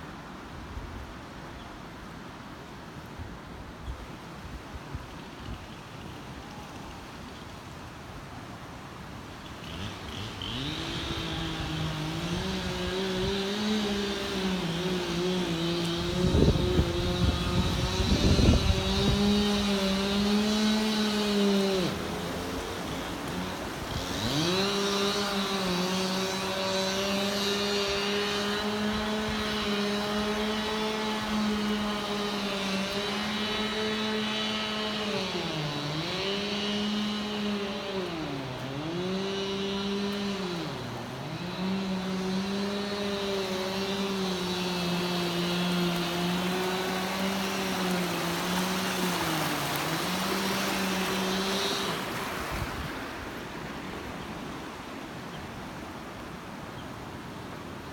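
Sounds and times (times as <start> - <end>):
motor running: 38.5 - 52.9.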